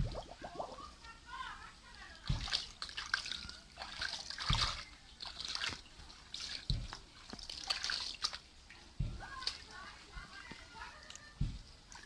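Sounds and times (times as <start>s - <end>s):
heavy splash: 0.0s - 0.9s
shallow water splashing: 0.0s - 1.1s, 1.9s - 10.9s.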